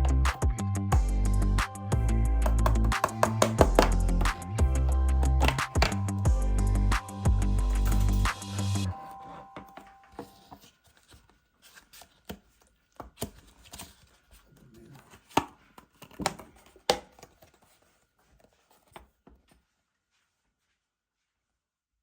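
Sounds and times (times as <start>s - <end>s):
hard objects knocking and clicking: 2.4s - 6.2s.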